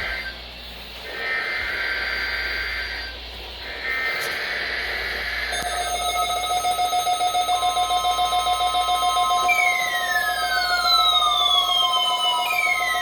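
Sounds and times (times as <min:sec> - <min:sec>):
pulsing alarm tone: 0:00.0 - 0:00.4, 0:01.1 - 0:13.0
second alarm tone: 0:05.2 - 0:13.0.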